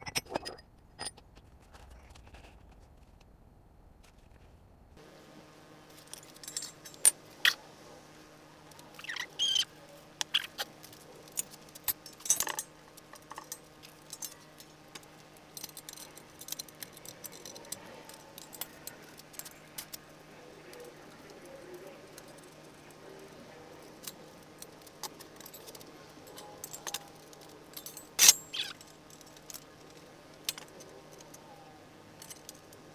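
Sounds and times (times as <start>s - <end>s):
faint steady hum: 1.7s - 32.9s
metal parts clinking: 5.9s - 7.6s, 8.6s - 31.5s, 32.1s - 32.9s.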